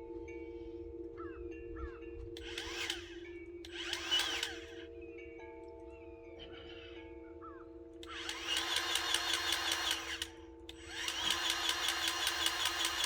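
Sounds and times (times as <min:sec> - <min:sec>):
grease gun motor whining: 0:02.4 - 0:04.8, 0:08.0 - 0:13.0
pump clicking: 0:02.4 - 0:04.8, 0:08.0 - 0:13.0.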